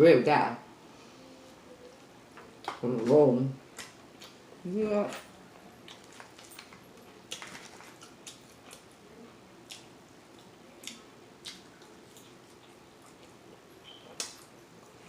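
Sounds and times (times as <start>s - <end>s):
person chewing with smacking: 3.7s - 4.4s, 5.5s - 15.0s.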